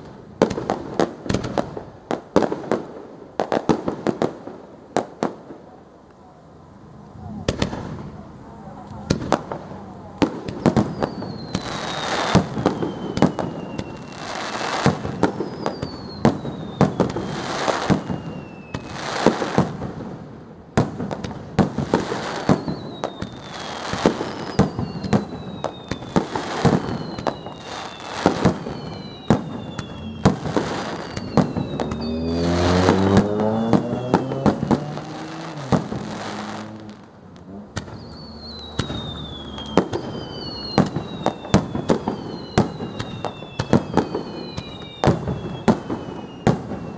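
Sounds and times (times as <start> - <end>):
fireworks bangs and crackling: 0.0 - 46.9
low rising tone: 6.6 - 8.7, 36.7 - 40.8
falling firework whistles: 9.1 - 20.0, 20.8 - 46.9.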